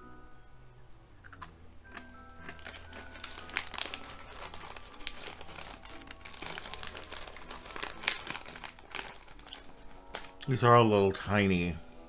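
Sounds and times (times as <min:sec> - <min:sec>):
soft background music: 0:00.0 - 0:12.0
snack bag crinkling: 0:01.4 - 0:10.6.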